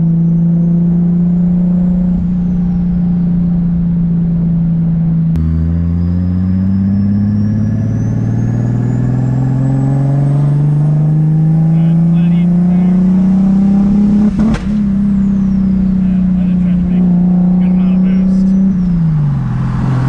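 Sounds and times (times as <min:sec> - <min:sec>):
car engine accelerating: 0:00.0 - 0:20.0.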